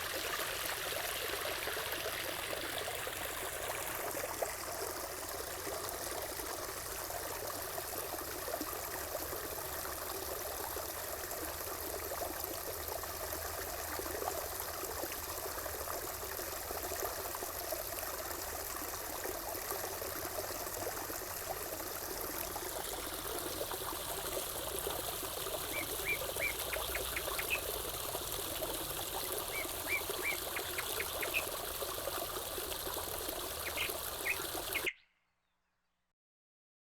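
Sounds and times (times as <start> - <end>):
water trickling and splashing: 0.0 - 35.0
small bird chirping: 25.6 - 27.7, 29.4 - 31.5, 33.6 - 35.2.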